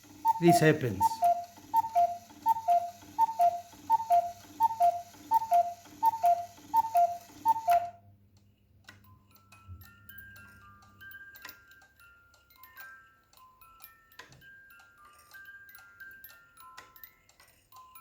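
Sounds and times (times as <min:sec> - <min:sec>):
cuckoo clock calling: 0:00.0 - 0:08.0.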